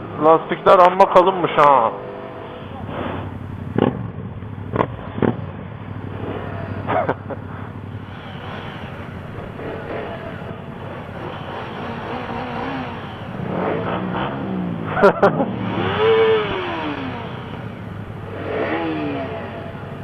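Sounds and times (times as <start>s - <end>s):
motorcycle engines running: 0.0s - 20.0s.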